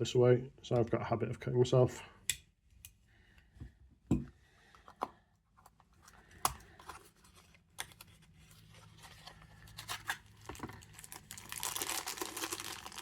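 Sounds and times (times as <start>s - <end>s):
packaging rustling: 6.0s - 13.0s.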